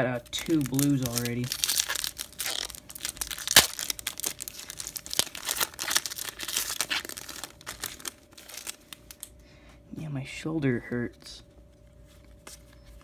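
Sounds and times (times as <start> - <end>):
wrapper crinkling and tearing: 0.0 - 9.3.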